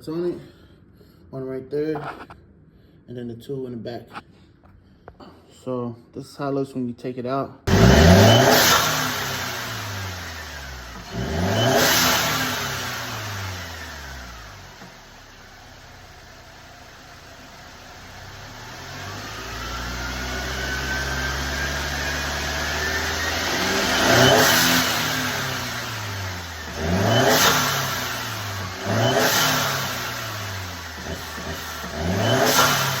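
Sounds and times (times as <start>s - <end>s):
car engine revving: 7.7s - 33.0s.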